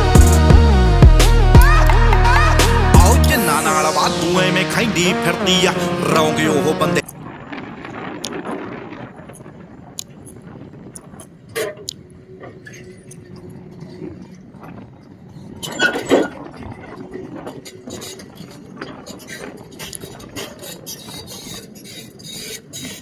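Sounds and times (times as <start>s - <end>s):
steady engine hum: 0.0s - 3.7s.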